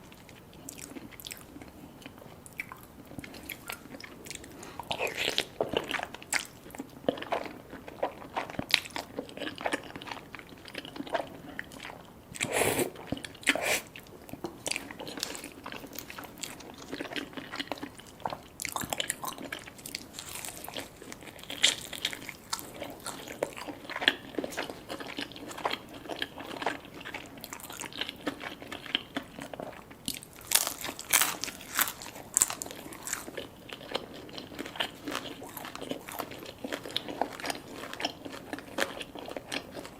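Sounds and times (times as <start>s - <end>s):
crunchy bites and chewing: 14.4s - 39.9s.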